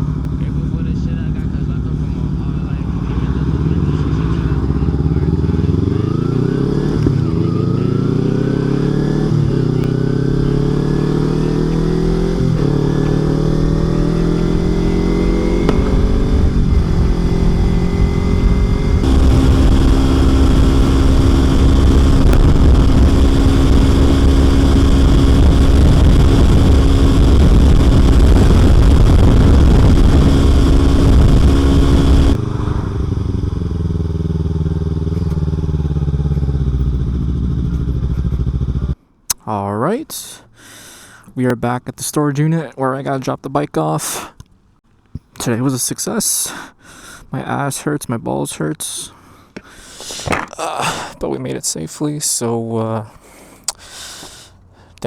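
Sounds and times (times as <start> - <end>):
motorcycle engine accelerating: 0.0 - 39.0
wind rush: 11.8 - 34.3.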